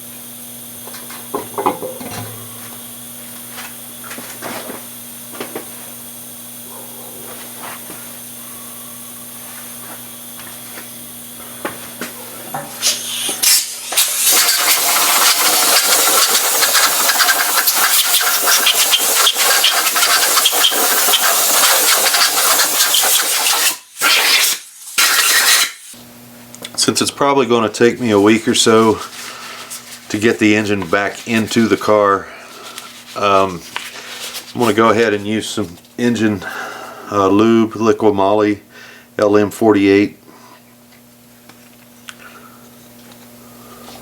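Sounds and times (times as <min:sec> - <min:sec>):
compressed-air blow gun hissing: 0:12.7 - 0:26.0.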